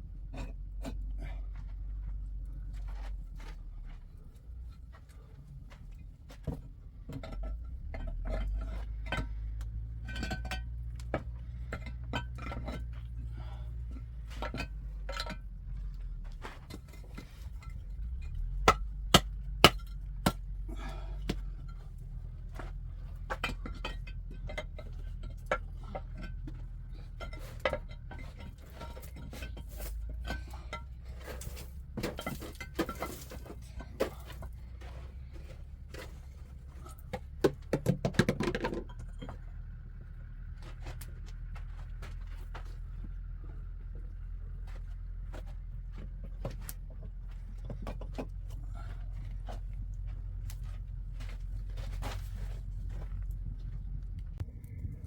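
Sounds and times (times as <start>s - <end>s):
steady low rumble: 0.0s - 37.2s, 38.9s - 55.0s
hard objects clinking and knocking: 35.6s - 39.5s.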